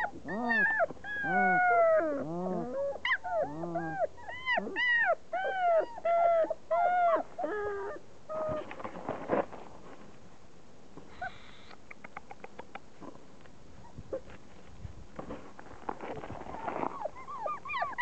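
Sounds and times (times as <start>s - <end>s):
puppies whining and whimpering: 0.0s - 8.8s, 16.4s - 18.0s
rustling: 8.3s - 10.4s, 12.9s - 18.0s.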